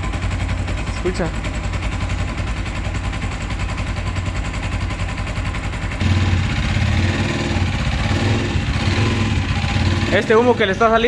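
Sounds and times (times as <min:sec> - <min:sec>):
motorcycle engine idling: 0:00.0 - 0:11.0.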